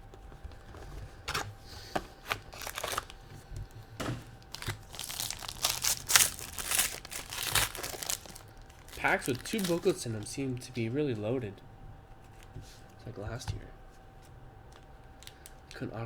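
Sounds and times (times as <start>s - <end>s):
wrappers tearing and crinkling: 1.3s - 10.7s, 15.1s - 15.8s.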